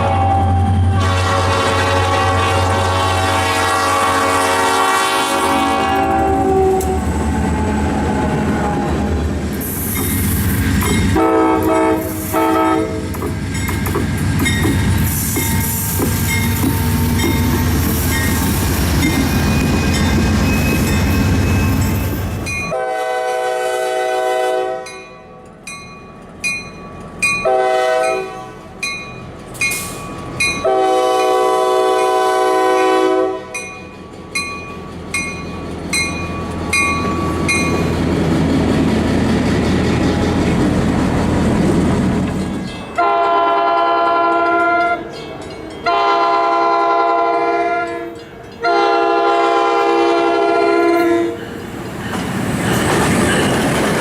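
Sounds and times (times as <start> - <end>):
locomotive air horn chord: 0.0 - 7.1, 11.2 - 13.0, 22.7 - 24.9, 27.4 - 28.6, 30.6 - 33.6, 43.0 - 45.0, 45.8 - 51.4
passing train rumble: 0.0 - 54.0.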